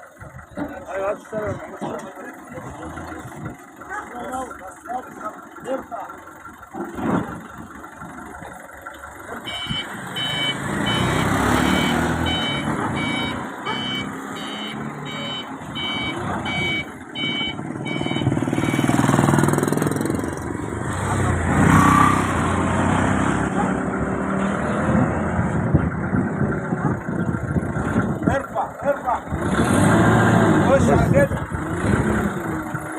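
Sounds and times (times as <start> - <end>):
heavy vehicle engine running: 0.0 - 32.9
reversing alarm beeping: 9.4 - 19.6.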